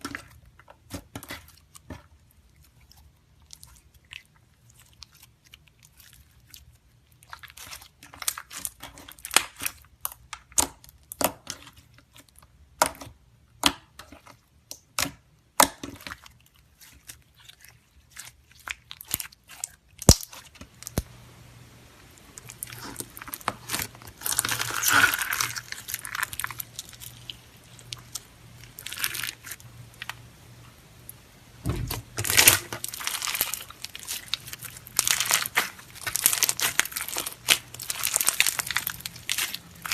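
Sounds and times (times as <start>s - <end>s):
slime crackling and squelching: 0.0s - 39.9s
slime clicking and popping: 18.7s - 21.1s.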